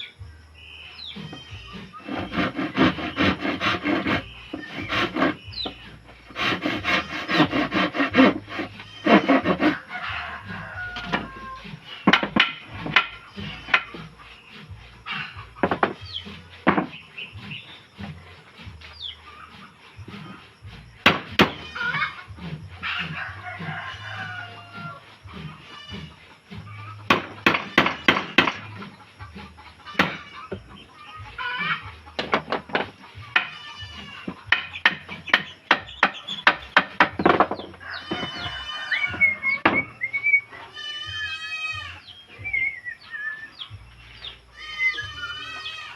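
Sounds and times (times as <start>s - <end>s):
chickens clucking: 0.0s - 40.8s, 41.4s - 45.9s
small birds calling: 0.0s - 45.9s
sharp knocks on wood: 12.1s - 13.1s, 15.6s - 16.0s, 16.7s - 16.9s, 21.0s - 21.6s, 27.1s - 28.6s, 30.0s - 30.2s, 34.5s - 38.4s
hammer striking nail into wood: 21.1s - 21.6s, 27.1s - 28.6s, 30.0s - 30.2s.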